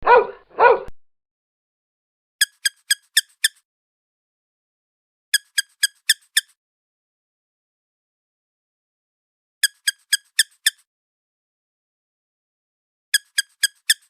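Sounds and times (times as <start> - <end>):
dog barking: 0.0 - 1.0
quick high-pitched squeaks: 2.4 - 3.6, 5.4 - 6.6, 9.6 - 10.9, 13.2 - 14.0.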